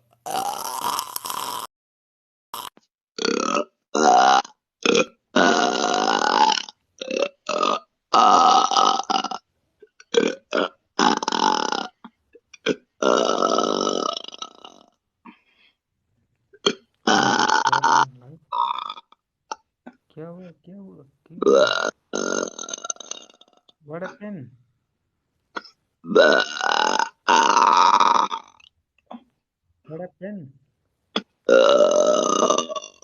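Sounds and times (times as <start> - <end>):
woman belching: 0.3 - 1.7, 3.2 - 9.4, 10.1 - 14.8, 16.6 - 20.1, 21.4 - 24.2, 25.6 - 29.3, 31.2 - 33.0.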